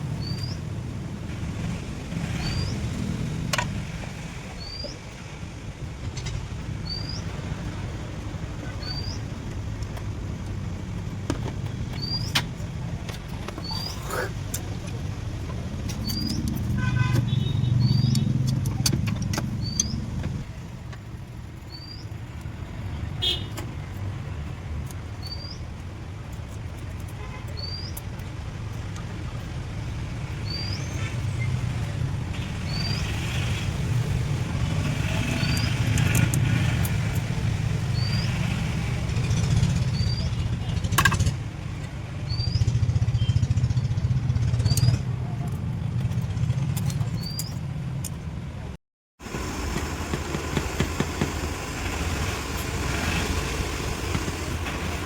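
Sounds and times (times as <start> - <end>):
motor vehicle engine running: 49.2 - 55.0.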